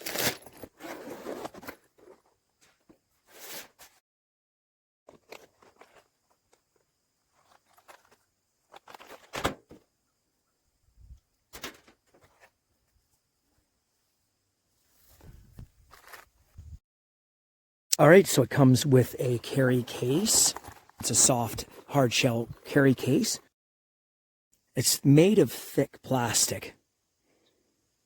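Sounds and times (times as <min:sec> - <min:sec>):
plastic tool case handling: 0:05.1 - 0:09.8, 0:19.9 - 0:21.1.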